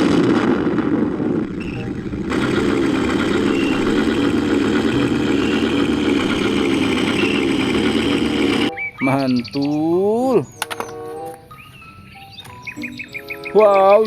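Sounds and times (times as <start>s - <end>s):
heavy tank engine rumbling: 0.0s - 8.7s.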